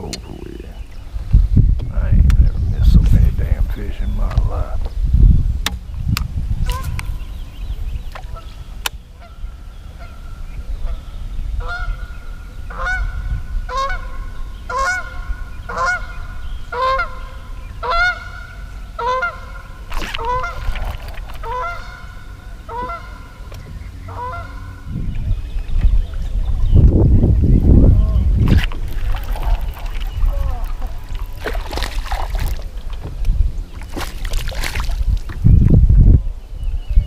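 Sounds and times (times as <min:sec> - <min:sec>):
goose honking: 0:17.8 - 0:19.6, 0:21.4 - 0:23.5, 0:24.1 - 0:24.9.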